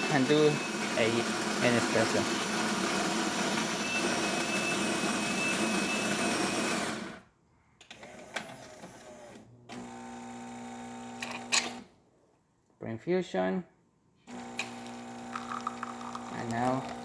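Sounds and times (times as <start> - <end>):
espresso machine humming: 0.0 - 6.9, 9.8 - 11.5, 14.3 - 17.0
coffee grinder grinding beans: 0.0 - 7.1, 14.3 - 17.0.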